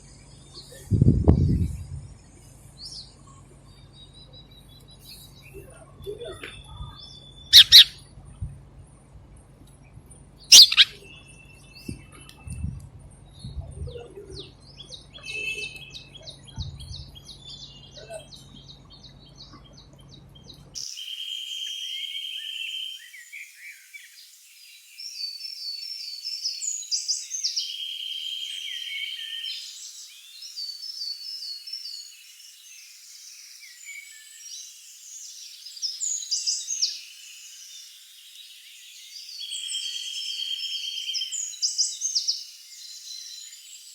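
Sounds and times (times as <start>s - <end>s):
sparrows chirping: 6.5s - 8.0s, 9.8s - 12.2s, 13.2s - 43.9s.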